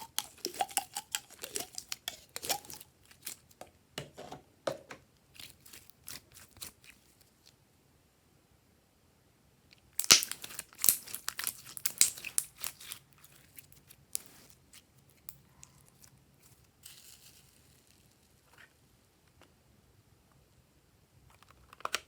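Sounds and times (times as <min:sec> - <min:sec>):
sharp crackling and crinkling: 0:00.0 - 0:03.7, 0:05.3 - 0:07.5, 0:10.0 - 0:18.8.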